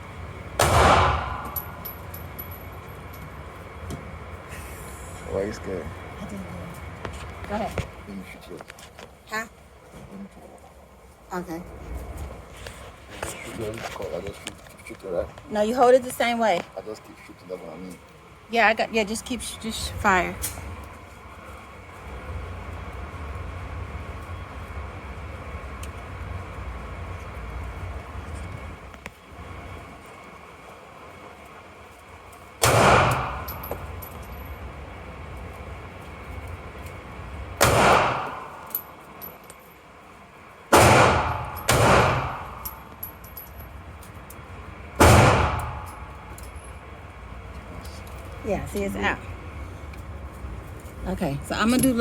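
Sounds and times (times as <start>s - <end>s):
handgun shots: 0.6s - 1.9s, 32.6s - 33.8s, 37.6s - 38.8s, 40.7s - 42.8s, 45.0s - 46.0s.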